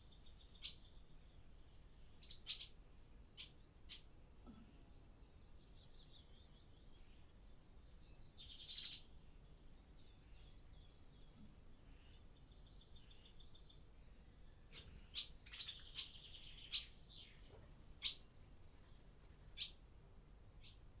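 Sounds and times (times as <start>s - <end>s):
swallows twittering: 8.4s - 9.1s, 11.3s - 19.8s.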